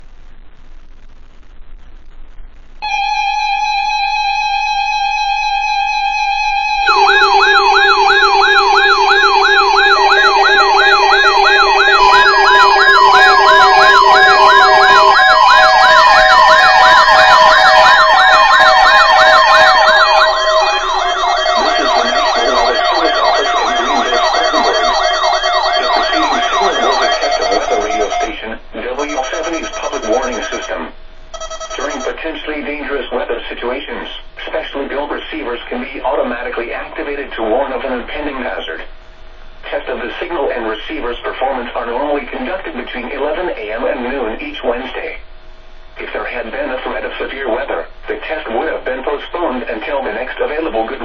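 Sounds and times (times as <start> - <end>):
faint static: 0.0 - 51.0
yelping electronic sirens: 2.8 - 28.4, 29.0 - 30.8, 31.4 - 32.2
steady electronic tone: 2.8 - 32.2.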